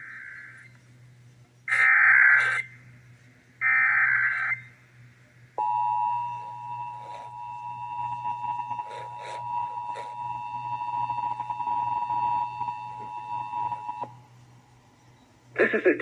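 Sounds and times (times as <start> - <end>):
warbling digital data tones: 1.7 - 2.9, 3.6 - 4.8, 5.6 - 14.1
steady two-tone alert signal: 5.6 - 14.1.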